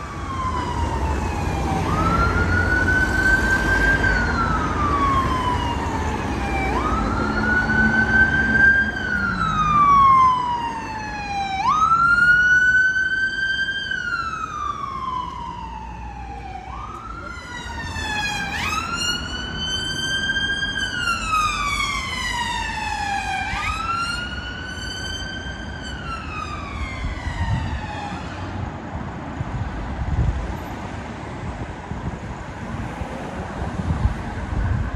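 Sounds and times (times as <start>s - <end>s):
emergency vehicle siren wailing: 0.0s - 28.7s
road noise with low rumbles: 0.0s - 34.9s.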